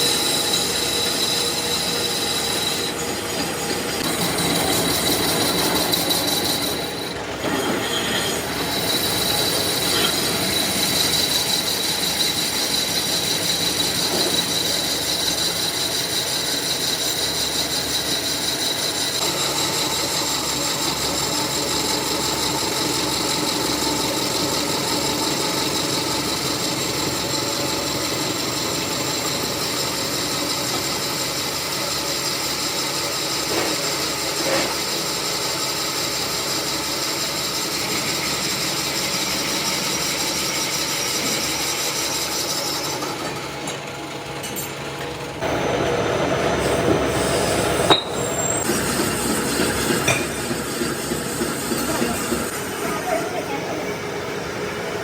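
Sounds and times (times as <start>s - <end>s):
high machine whines: 0.0s - 55.0s
metalworking machinery running: 0.0s - 55.0s.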